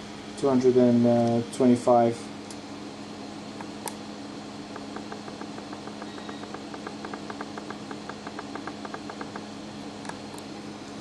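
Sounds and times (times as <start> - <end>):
fan humming: 0.0 - 11.0
rapid short clicks: 4.7 - 10.5.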